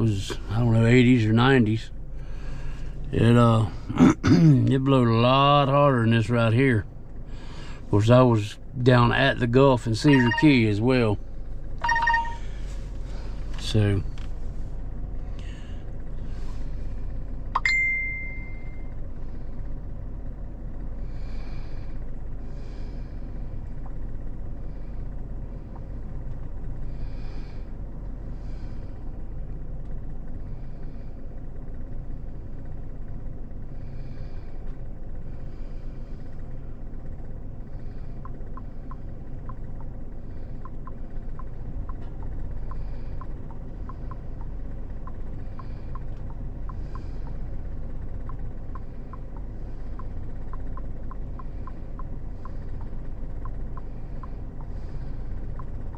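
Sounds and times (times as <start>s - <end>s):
bright ding: 17.6s - 18.8s.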